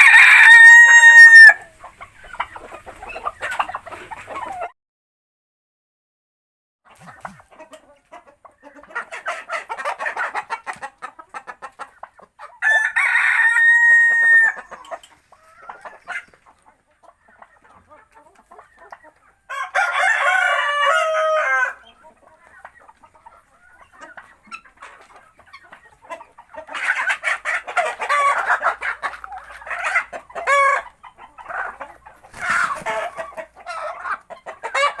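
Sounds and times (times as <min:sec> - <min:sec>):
rooster crowing: 0:00.0 - 0:01.6, 0:12.6 - 0:14.6, 0:19.5 - 0:21.8
chickens clucking: 0:00.0 - 0:04.8, 0:06.9 - 0:35.0.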